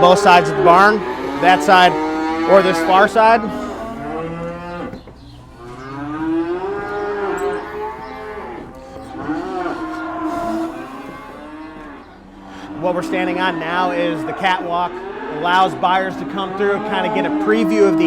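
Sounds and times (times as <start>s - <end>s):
cattle mooing: 0.0s - 18.0s.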